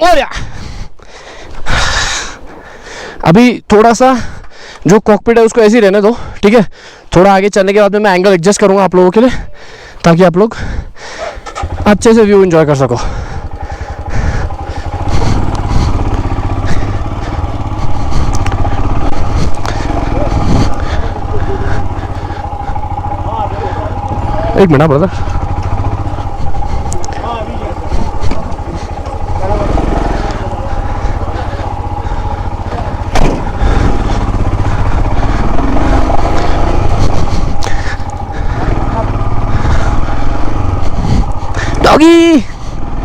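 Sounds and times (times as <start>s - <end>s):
motorcycle engine idling: 0.1s - 4.8s, 8.5s - 43.0s
sharp knock: 33.1s - 33.5s.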